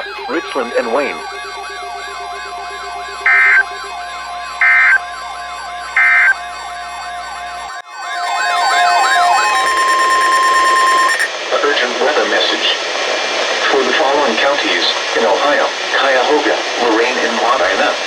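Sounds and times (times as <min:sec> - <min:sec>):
digital data tones screeching: 0:00.0 - 0:11.3
warbling siren tone: 0:00.0 - 0:11.5
steady tone: 0:00.0 - 0:12.1.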